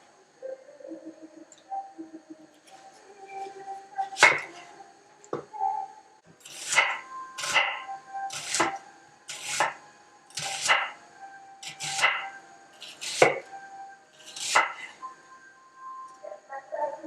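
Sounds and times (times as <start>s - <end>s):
knife cutting on cutting board: 6.4s - 9.8s, 10.4s - 11.0s, 11.6s - 13.4s, 14.2s - 14.9s.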